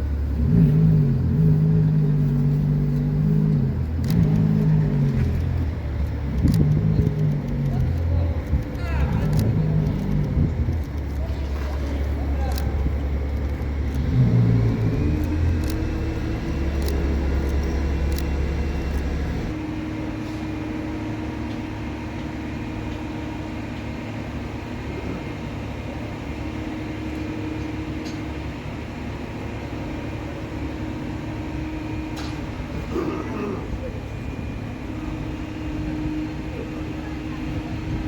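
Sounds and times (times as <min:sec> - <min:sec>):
car engine revving: 0:00.0 - 0:19.7
car engine idling: 0:00.0 - 0:38.0.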